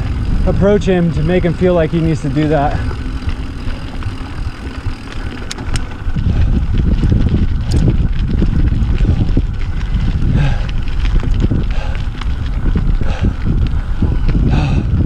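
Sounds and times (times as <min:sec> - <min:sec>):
bike clicks and rattles: 0:00.0 - 0:15.0
bike rolling on dirt trail: 0:00.0 - 0:15.0
wind buffeting microphone: 0:00.0 - 0:15.0.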